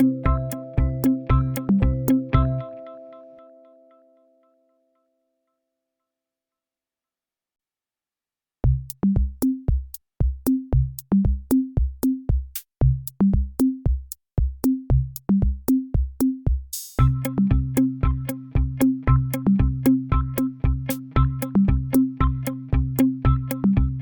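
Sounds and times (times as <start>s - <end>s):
drum machine beat with bass: 0.0s - 2.7s, 8.6s - 24.0s
synthesizer: 0.0s - 4.7s.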